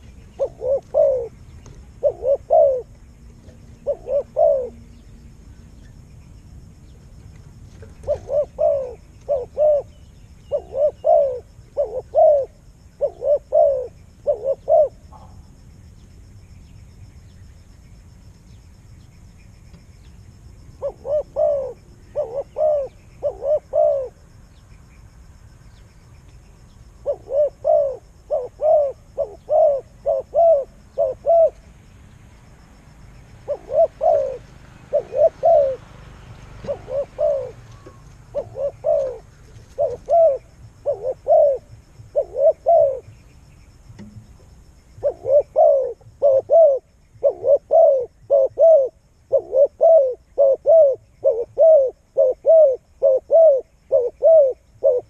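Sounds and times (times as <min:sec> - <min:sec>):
bird calling: 0:00.0 - 0:06.0, 0:07.8 - 0:15.4, 0:20.0 - 0:24.2, 0:27.0 - 0:31.7, 0:33.4 - 0:55.0.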